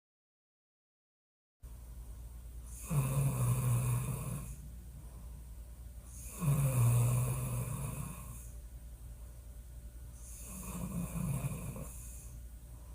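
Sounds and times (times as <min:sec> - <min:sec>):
quiet breathing: 0:01.8 - 0:12.9
woman snoring loudly: 0:02.7 - 0:04.6, 0:06.1 - 0:08.5, 0:10.2 - 0:12.4.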